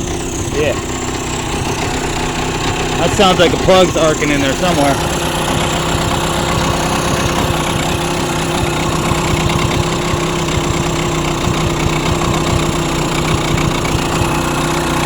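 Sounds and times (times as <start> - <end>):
outboard engine idling unevenly: 0.0 - 15.0.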